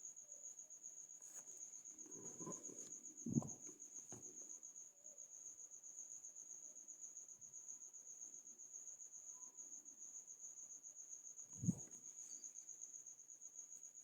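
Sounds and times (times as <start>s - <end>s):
cricket trilling: 0.0s - 14.0s
soft rustle: 1.1s - 4.6s
dull thump: 2.2s - 4.4s.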